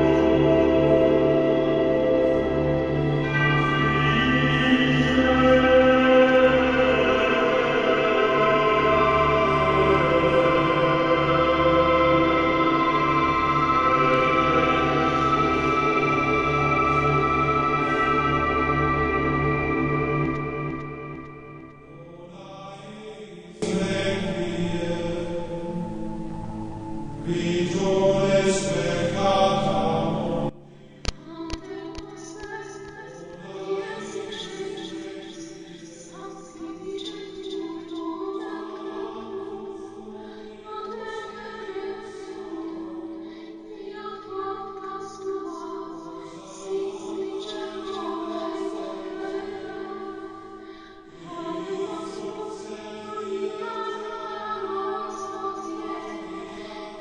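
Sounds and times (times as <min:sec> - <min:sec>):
choral chanting: 0:00.0 - 0:26.6, 0:27.2 - 0:57.0
choir singing held notes: 0:00.0 - 0:30.6.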